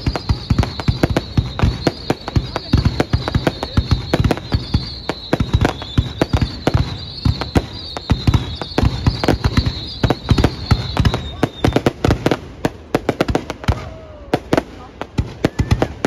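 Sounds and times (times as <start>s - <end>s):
high wavering whistle: 0.0s - 12.1s
fireworks booming: 0.0s - 16.0s.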